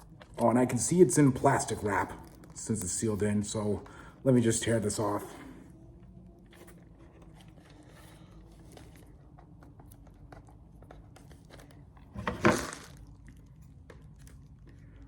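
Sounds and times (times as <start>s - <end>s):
plastic wrap crinkling: 6.6s - 15.0s
plastic wrap tearing: 12.1s - 13.3s.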